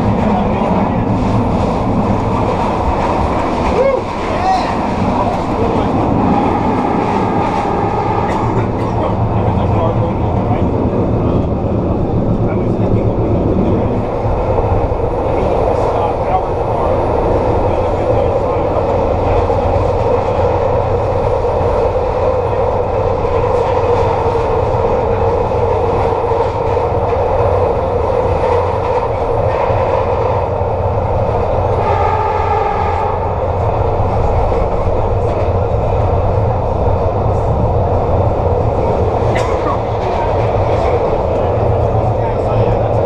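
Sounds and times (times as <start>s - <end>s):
light rail wheels rumbling: 0.0s - 43.0s.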